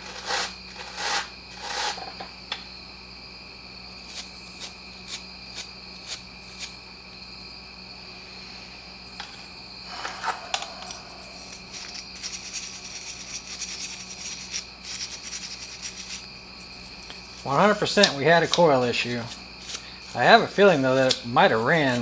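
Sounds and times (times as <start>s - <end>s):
rustling and clattering of tools: 0.0s - 2.4s, 9.2s - 14.0s
crickets chirring: 0.0s - 22.0s.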